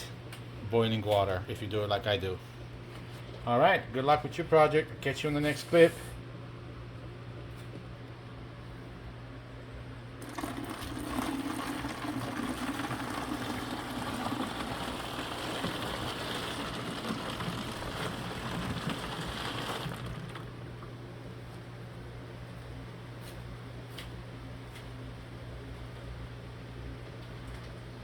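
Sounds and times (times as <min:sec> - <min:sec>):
low steady hum: 0:00.0 - 0:28.0
running water rushing: 0:10.2 - 0:20.7.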